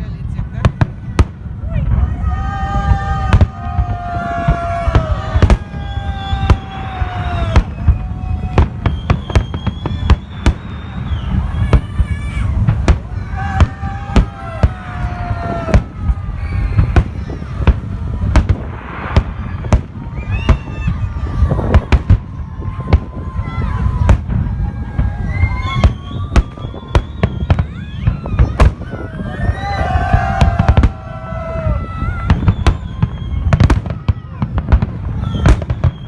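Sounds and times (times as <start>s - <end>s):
firework bangs: 0.0s - 36.0s
low rumble of shell bursts: 0.8s - 28.0s.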